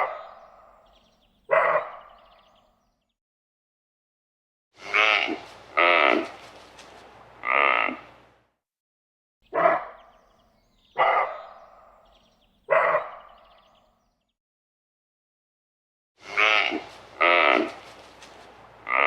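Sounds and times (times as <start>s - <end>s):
deer calling: 4.8s - 8.3s, 16.2s - 19.0s.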